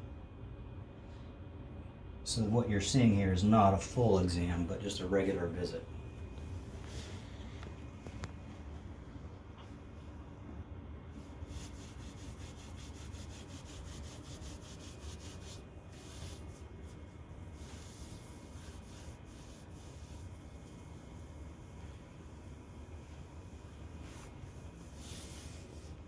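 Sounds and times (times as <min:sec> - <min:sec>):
low steady hum: 0:00.0 - 0:26.0
hands rubbing skin and clothing: 0:11.2 - 0:26.0.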